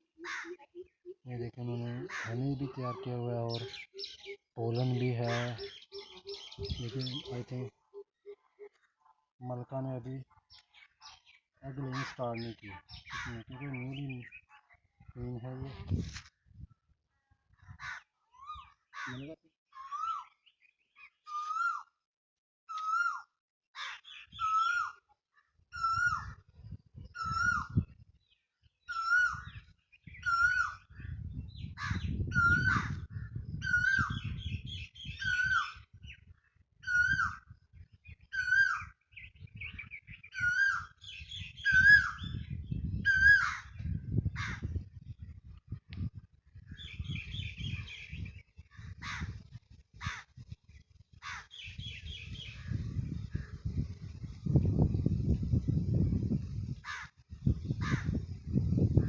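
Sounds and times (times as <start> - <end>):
bird calling: 0.0 - 9.0.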